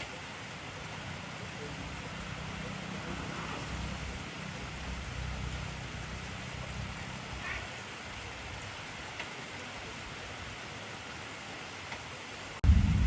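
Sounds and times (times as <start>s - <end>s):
heavy rain falling: 0.0s - 13.0s
low rumble: 12.6s - 13.0s.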